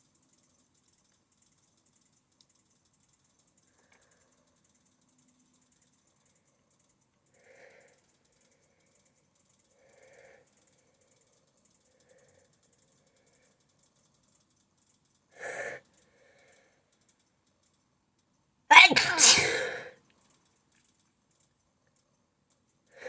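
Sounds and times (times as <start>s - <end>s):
person gasping for breath: 18.7s - 19.9s.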